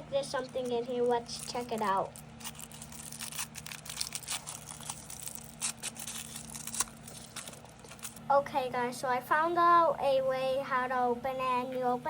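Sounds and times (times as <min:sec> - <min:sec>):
plastic packaging crinkling: 0:00.4 - 0:08.3.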